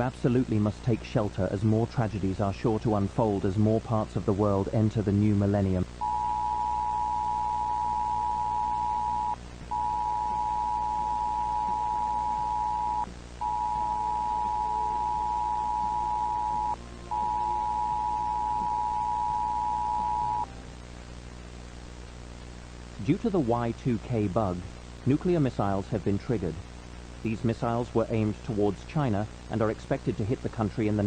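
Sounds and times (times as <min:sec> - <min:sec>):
low steady hum: 0:00.0 - 0:31.0.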